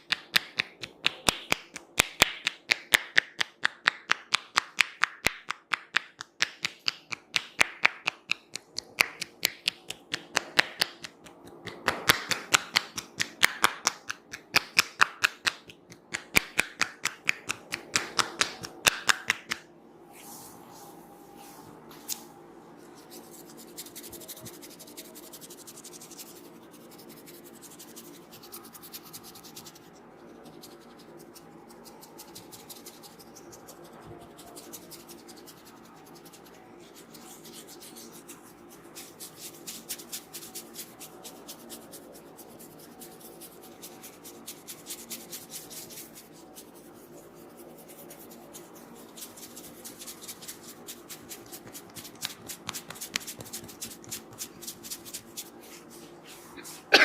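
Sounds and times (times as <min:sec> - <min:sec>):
hands scratching through hair: 0:22.9 - 0:57.0.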